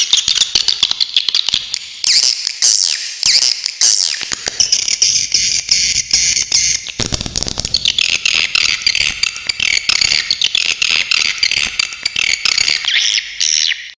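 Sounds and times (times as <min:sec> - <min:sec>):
swiftlets chattering: 0:07.0 - 0:12.9.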